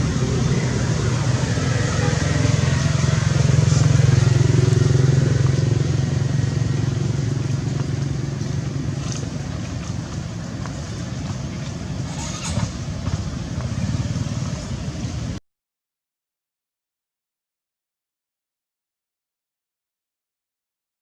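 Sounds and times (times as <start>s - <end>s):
vehicle engine running: 0.0s - 15.4s.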